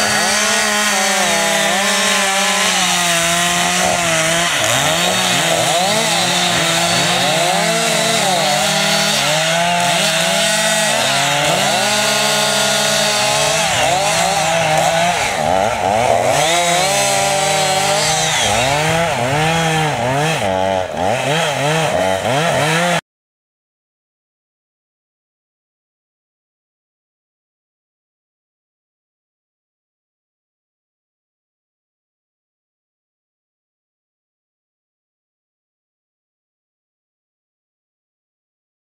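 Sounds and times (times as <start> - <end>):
chainsaw engine revving: 0.0 - 23.0.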